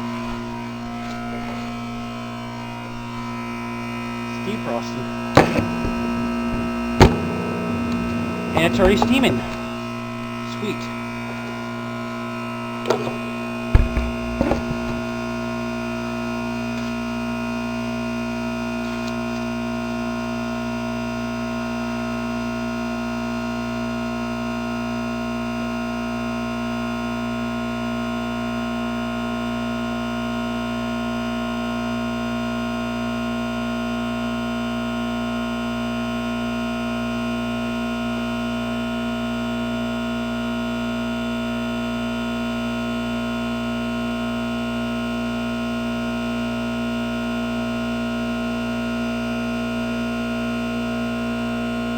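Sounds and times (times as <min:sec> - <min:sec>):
heat pump compressor drone: 0:00.0 - 0:17.0
knocks: 0:05.0 - 0:10.3, 0:12.8 - 0:15.4.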